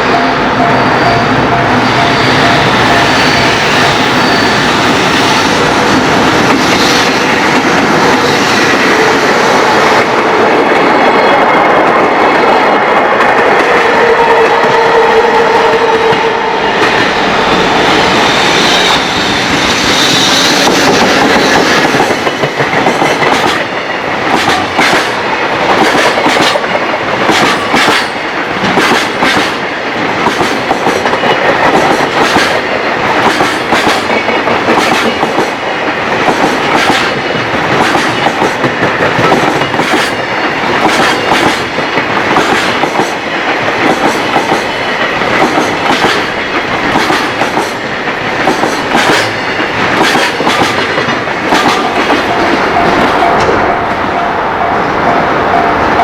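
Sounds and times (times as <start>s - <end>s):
freight train passing: 0.0s - 56.0s
wheels clacking over rail joints: 20.6s - 56.0s.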